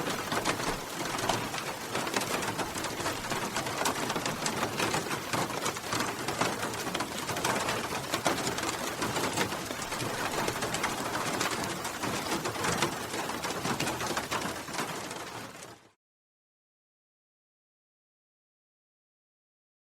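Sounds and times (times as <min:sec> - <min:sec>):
steady rain falling: 0:00.0 - 0:16.0.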